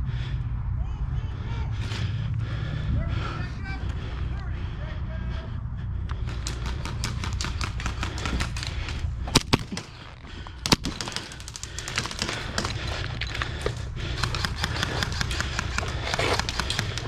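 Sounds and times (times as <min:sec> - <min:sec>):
low rumble: 0:00.0 - 0:10.6
airsoft guns firing: 0:06.2 - 0:17.0
loud cracks: 0:06.2 - 0:17.0.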